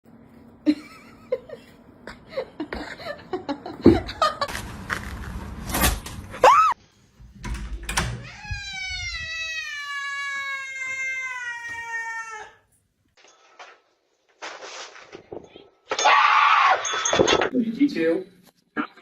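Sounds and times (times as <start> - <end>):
cat meowing: 8.2 - 12.6.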